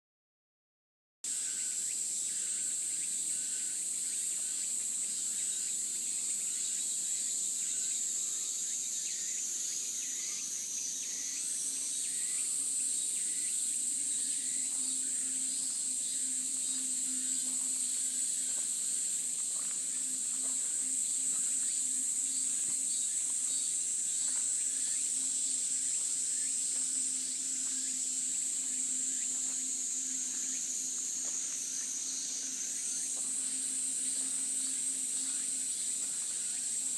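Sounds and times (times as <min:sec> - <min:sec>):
cicadas droning: 0:01.2 - 0:36.9.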